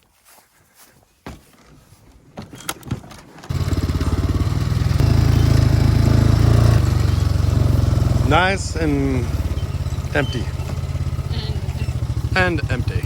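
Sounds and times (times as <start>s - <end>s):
small engine running: 3.5s - 13.0s.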